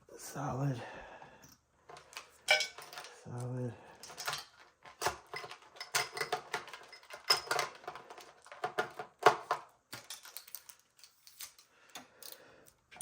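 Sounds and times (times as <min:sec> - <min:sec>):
hand tools clicking and knocking: 0:01.9 - 0:03.2, 0:04.0 - 0:10.8.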